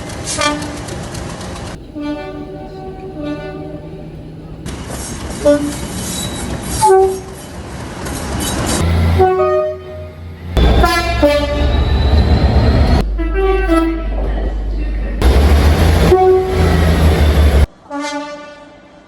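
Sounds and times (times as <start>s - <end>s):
train rumble: 0.0s - 17.7s
short train horn blasts: 1.9s - 4.0s, 8.8s - 14.4s, 15.2s - 19.0s.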